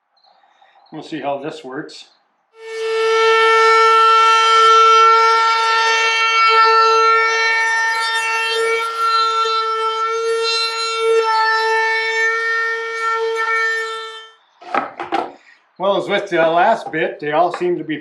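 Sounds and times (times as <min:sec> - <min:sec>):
wood router whining: 0:02.6 - 0:15.4.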